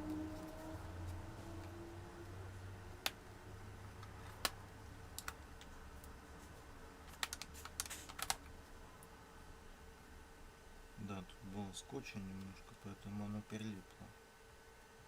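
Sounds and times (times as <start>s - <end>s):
laptop parts clicking: 4.0s - 5.7s, 7.0s - 8.5s.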